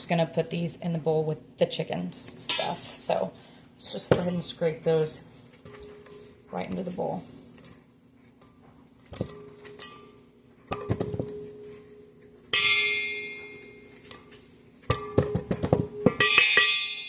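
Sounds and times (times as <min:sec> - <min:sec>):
bowl ringing: 0:09.2 - 0:17.0.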